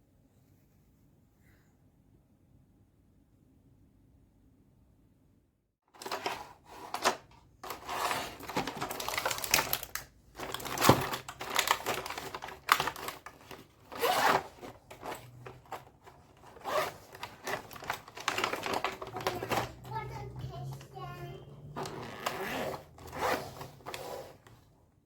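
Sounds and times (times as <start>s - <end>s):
plastic parts clicking and rustling: 6.0s - 24.6s.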